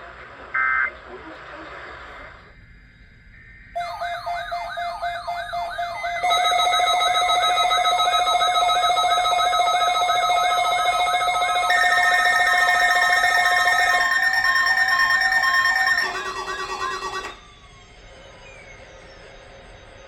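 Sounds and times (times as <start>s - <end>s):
steady alarm tone: 3.4s - 20.0s
harsh electronic buzz: 3.8s - 17.4s
higher electronic tone: 3.8s - 17.4s
rising siren alarm sweep: 3.8s - 20.0s.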